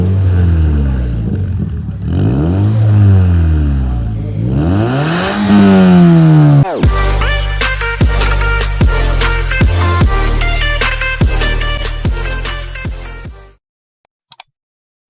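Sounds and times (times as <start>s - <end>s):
car engine revving: 0.0s - 7.4s.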